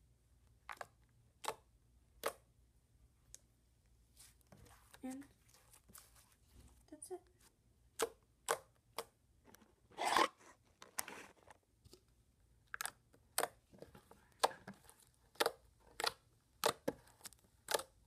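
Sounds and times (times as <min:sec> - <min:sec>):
slime squished by hand: 0:14.3 - 0:18.0.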